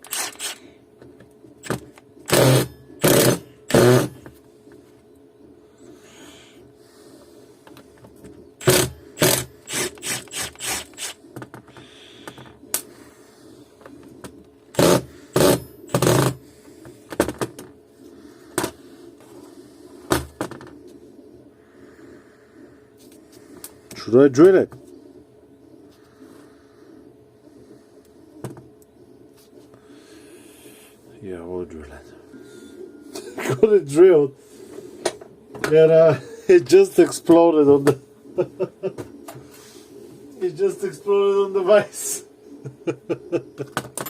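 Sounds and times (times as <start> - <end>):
faint steady hum: 0.0 - 44.0
impact driver hammering: 1.6 - 4.2, 8.6 - 11.1, 14.7 - 16.4.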